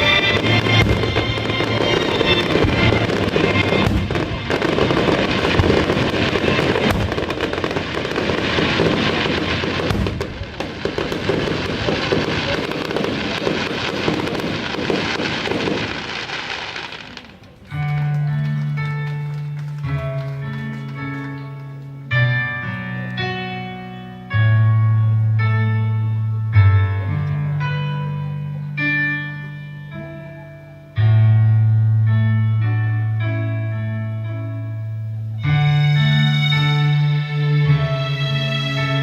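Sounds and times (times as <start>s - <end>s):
music playing: 0.0s - 17.0s, 17.6s - 39.0s
fireworks bursting and crackling: 0.0s - 22.0s.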